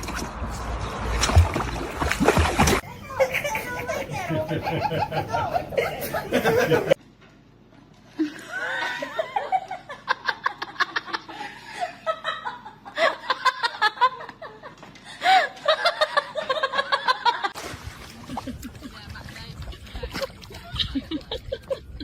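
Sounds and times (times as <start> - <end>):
person laughing: 3.1 - 7.0, 19.7 - 22.0.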